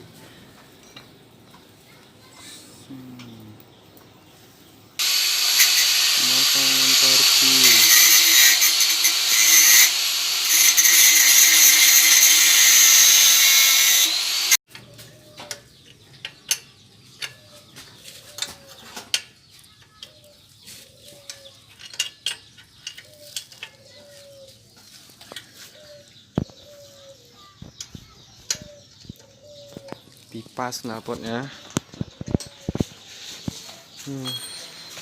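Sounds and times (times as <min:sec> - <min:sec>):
power tool whining: 0:05.0 - 0:14.6
bird calling: 0:22.8 - 0:35.0.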